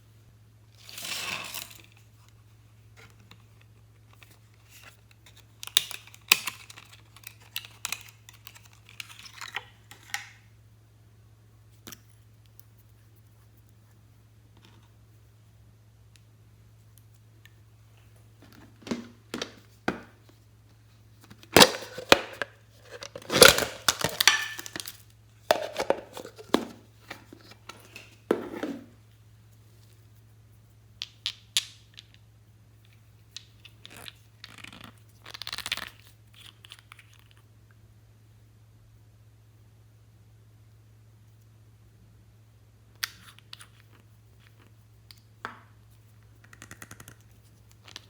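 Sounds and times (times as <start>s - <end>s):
slime crackling and tearing: 23.2s - 25.0s.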